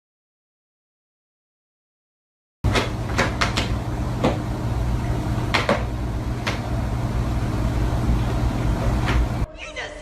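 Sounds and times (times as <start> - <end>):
steady low hum: 2.6 - 9.5
sharp knocks or clicks: 2.7 - 4.4, 5.5 - 6.6.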